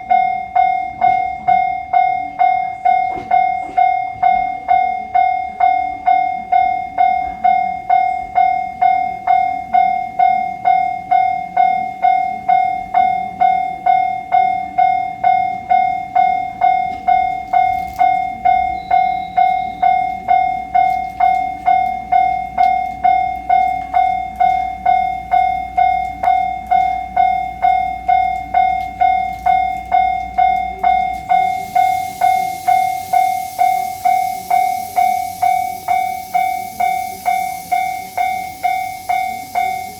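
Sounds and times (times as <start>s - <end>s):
level crossing alarm bell: 0.0s - 39.9s
hiss: 31.2s - 39.9s.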